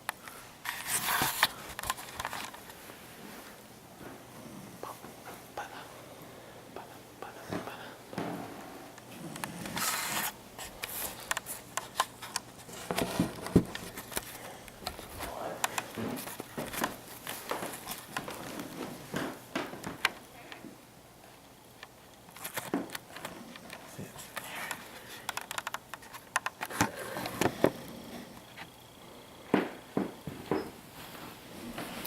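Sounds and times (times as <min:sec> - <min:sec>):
rustling and handling noise: 0:00.0 - 0:06.0, 0:06.8 - 0:32.0
scattered clicks: 0:21.8 - 0:27.5.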